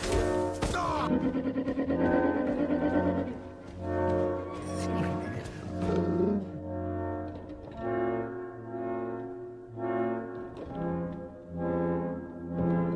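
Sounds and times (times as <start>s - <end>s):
brass-led orchestral music: 3.1s - 12.9s.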